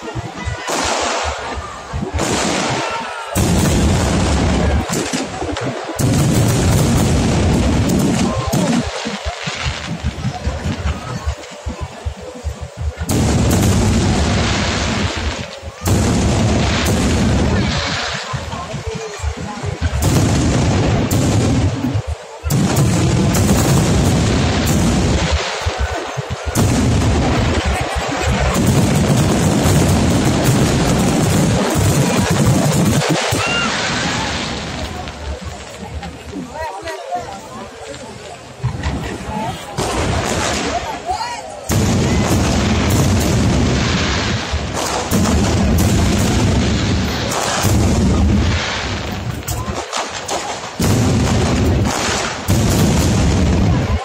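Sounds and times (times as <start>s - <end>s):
fireworks booming and cracking: 0.0s - 54.0s
loud firework bang: 41.7s - 54.0s.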